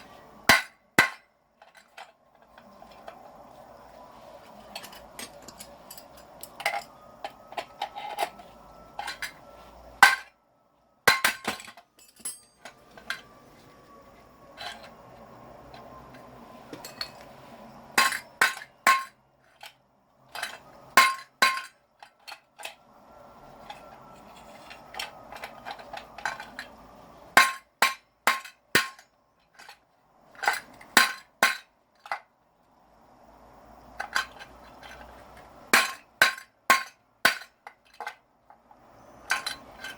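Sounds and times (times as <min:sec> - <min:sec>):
low steady hiss: 0:00.0 - 0:39.9
sharp metallic knocks and clinks: 0:04.7 - 0:08.4, 0:11.1 - 0:13.3, 0:16.2 - 0:17.3, 0:17.9 - 0:22.8, 0:34.0 - 0:38.2, 0:39.1 - 0:39.9.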